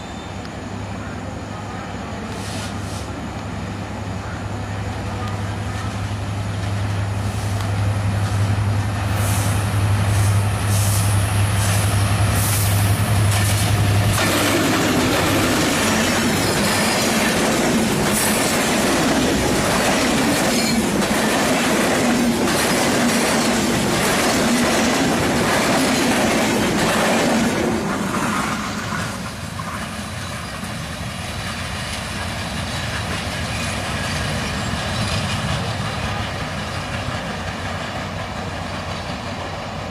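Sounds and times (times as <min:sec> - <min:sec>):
train low hum: 0:00.0 - 0:39.9
train wheels rattling: 0:06.3 - 0:39.9.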